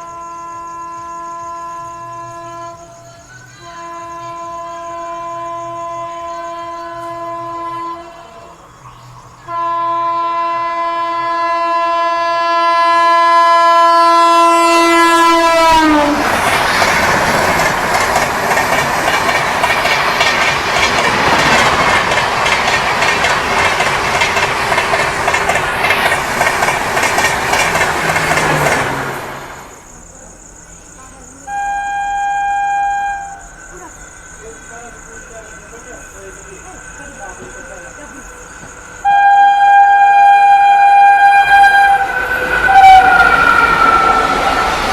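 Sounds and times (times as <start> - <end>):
train horn: 0.0 - 8.6, 9.5 - 16.9, 31.4 - 33.6, 39.0 - 44.9
train coaches rumbling and clattering: 0.0 - 44.9.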